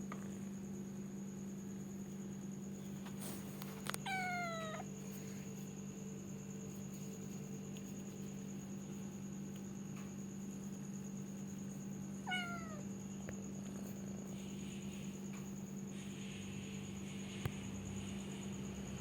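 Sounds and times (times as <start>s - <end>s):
steady low hum: 0.0s - 19.0s
cat meowing: 4.0s - 4.9s, 12.2s - 12.8s.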